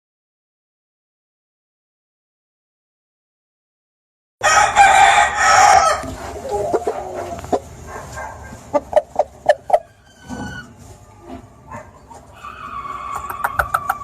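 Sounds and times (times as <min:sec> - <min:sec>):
rooster crowing: 0:04.4 - 0:07.5, 0:12.3 - 0:14.0.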